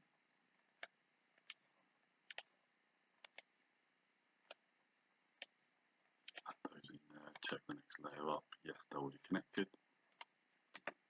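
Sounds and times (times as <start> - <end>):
computer mouse clicking: 2.2 - 2.5, 3.2 - 3.5, 4.4 - 4.6, 5.4 - 5.6, 6.2 - 6.5, 10.1 - 11.0.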